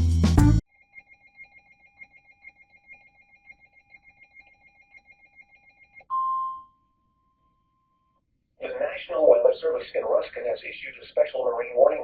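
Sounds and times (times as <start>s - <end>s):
steady single-pitch alarm beep: 0.6s - 8.2s
pulsing electronic tones: 0.7s - 6.0s.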